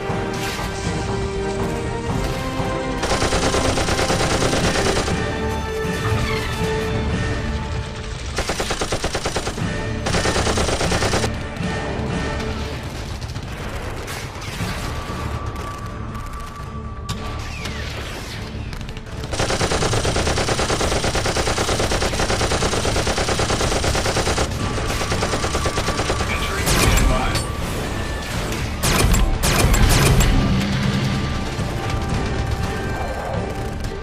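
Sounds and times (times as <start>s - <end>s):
film soundtrack music: 0.0s - 34.0s
automatic gunfire bursts: 3.0s - 5.3s, 8.3s - 11.3s, 19.3s - 27.0s.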